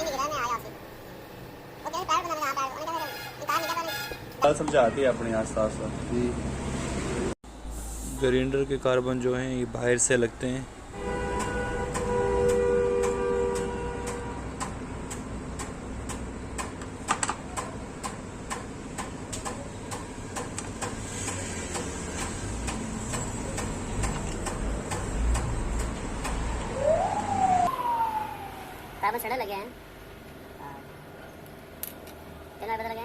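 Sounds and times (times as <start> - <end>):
steady ticking: 21.7 - 26.4
rising and falling tone: 26.4 - 29.0.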